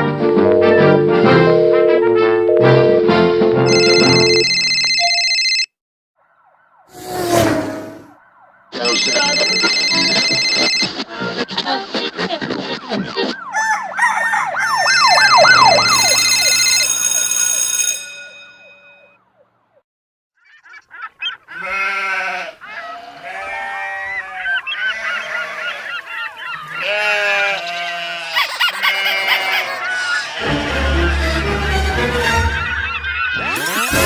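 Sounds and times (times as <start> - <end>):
rising and falling siren wail: 0.0 - 4.5, 6.3 - 8.9, 13.1 - 16.9
steady high electronic tones: 0.2 - 4.7, 14.8 - 16.8.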